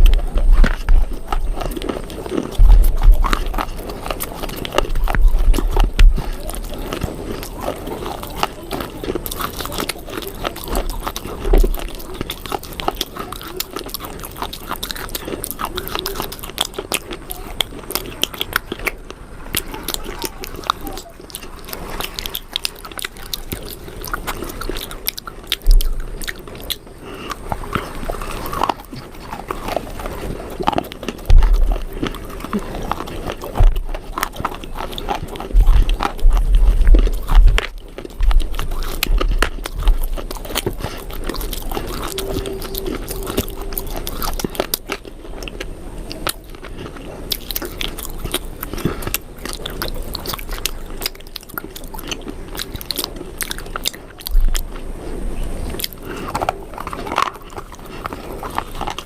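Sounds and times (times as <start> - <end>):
crunchy biting and chewing: 0.0 - 59.0
heavy low thumps: 2.5 - 3.9, 31.2 - 34.4, 35.2 - 46.1.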